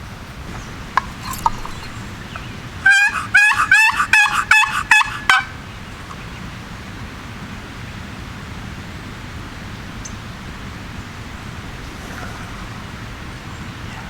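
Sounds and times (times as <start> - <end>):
low outdoor hiss: 0.0 - 14.0
turkey yelps: 0.9 - 5.6.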